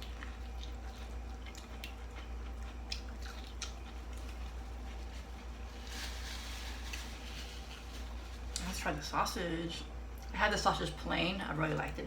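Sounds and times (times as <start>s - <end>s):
chewing sweet corn: 0.0s - 8.7s
steady low hum: 0.0s - 12.0s.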